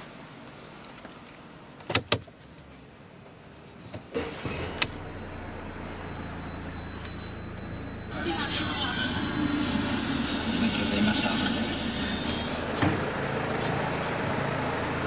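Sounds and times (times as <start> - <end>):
car engine starting and idling: 4.0 - 15.0.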